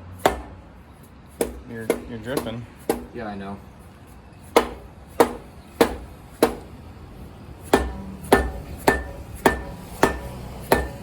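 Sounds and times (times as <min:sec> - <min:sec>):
mallet striking metal: 0:00.2 - 0:00.7, 0:01.4 - 0:03.2, 0:04.5 - 0:06.8, 0:07.7 - 0:11.0.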